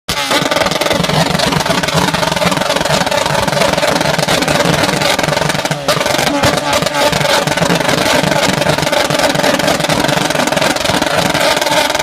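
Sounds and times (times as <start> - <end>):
loud engine running: 0.1 - 12.0.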